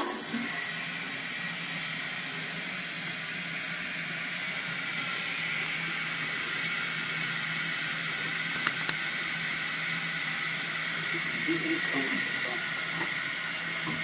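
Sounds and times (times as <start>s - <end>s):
toilet tank refilling hiss: 0.0s - 14.0s
sharp clicks: 8.5s - 9.0s.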